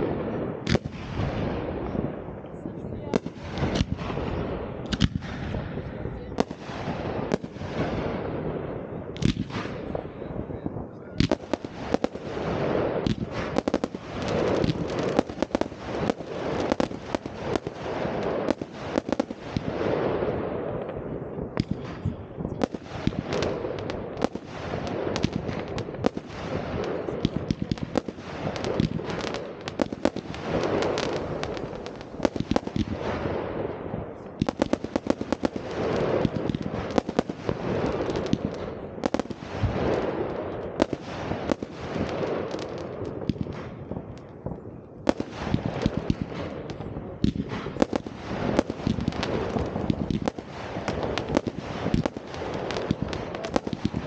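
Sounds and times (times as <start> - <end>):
fireworks bangs: 0.0 - 54.0
dense crackling: 21.6 - 33.2, 34.1 - 40.0, 45.1 - 54.0.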